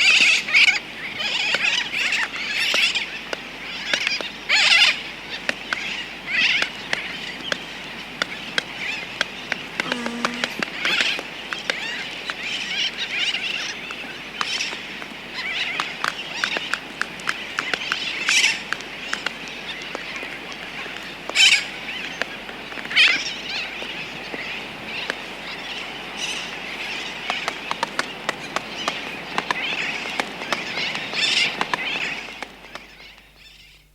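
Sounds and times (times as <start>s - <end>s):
tern flight calls: 0.0s - 33.9s
albatross clicking: 5.5s - 12.8s, 13.8s - 25.2s
tern colony chattering: 9.6s - 12.0s.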